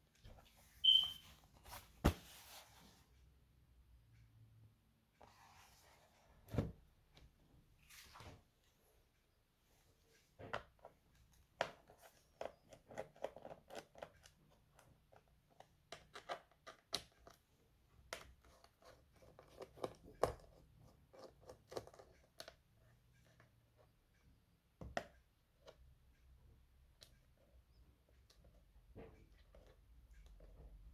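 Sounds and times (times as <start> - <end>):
clicks and taps of plastic and metal: 24.8 - 25.8.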